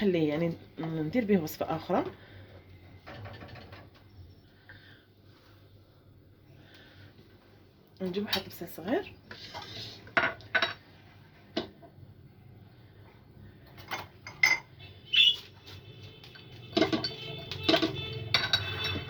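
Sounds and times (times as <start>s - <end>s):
dishes and utensils clinking: 13.7s - 14.8s, 16.7s - 19.0s.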